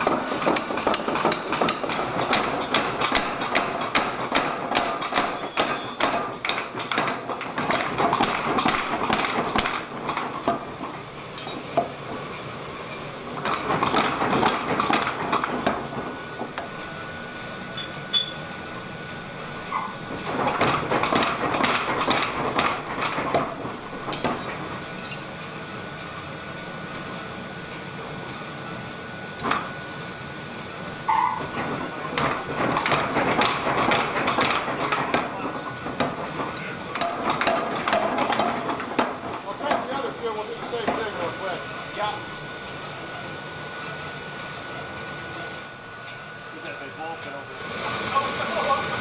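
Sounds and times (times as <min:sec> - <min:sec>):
power hammer striking hot steel: 0:00.0 - 0:12.0, 0:13.4 - 0:16.8, 0:20.1 - 0:25.4, 0:31.5 - 0:41.3
thin steady whine: 0:16.0 - 0:19.9.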